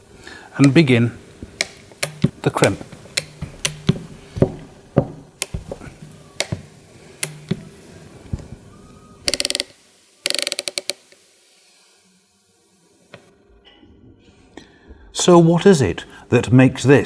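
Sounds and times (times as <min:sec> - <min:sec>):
crimping tool lever clicking: 0:09.3 - 0:09.7.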